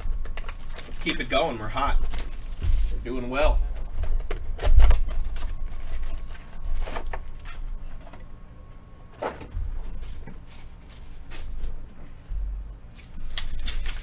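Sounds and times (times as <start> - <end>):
cardboard box and packs rustling: 0.0 - 7.8, 9.2 - 12.4.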